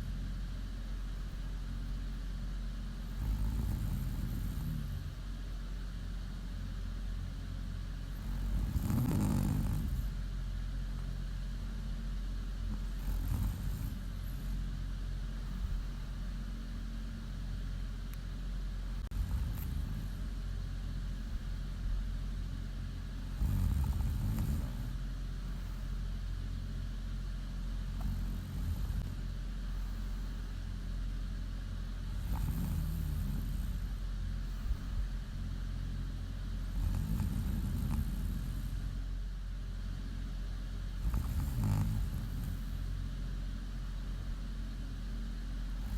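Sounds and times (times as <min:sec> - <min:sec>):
steady low hum: 0:00.0 - 0:45.9
woman snoring: 0:03.1 - 0:05.2, 0:08.1 - 0:10.2, 0:12.7 - 0:14.6, 0:19.0 - 0:20.4, 0:23.2 - 0:25.0, 0:27.9 - 0:29.2, 0:32.1 - 0:34.0, 0:36.6 - 0:39.0, 0:41.0 - 0:42.9.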